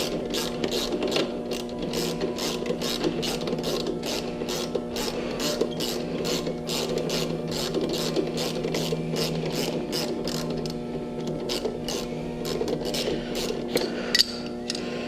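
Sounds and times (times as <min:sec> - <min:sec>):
low hum: 0:05.3 - 0:14.9.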